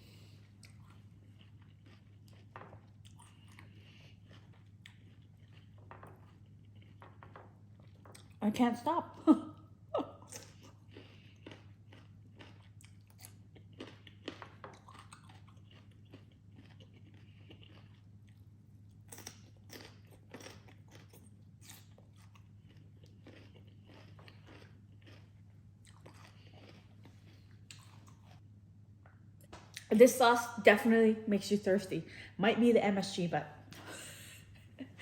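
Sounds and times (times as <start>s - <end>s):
person chewing crunchy food: 0.0s - 8.4s, 10.2s - 28.5s.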